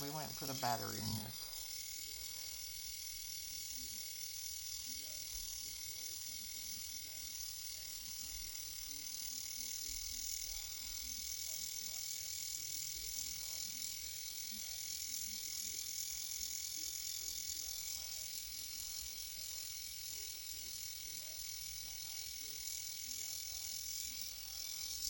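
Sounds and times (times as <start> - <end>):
eyebrow trimmer buzzing: 0.0 - 3.5, 23.8 - 25.0.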